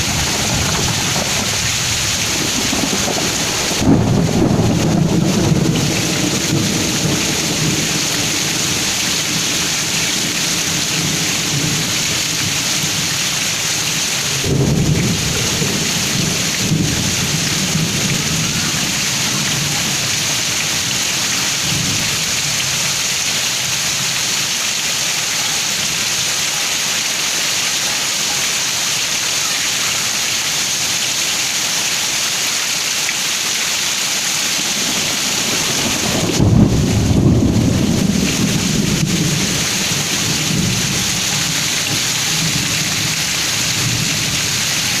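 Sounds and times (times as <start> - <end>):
thunder rumbling: 0.0 - 13.0, 14.3 - 21.0, 34.6 - 45.0
heavy rain pouring: 0.0 - 45.0.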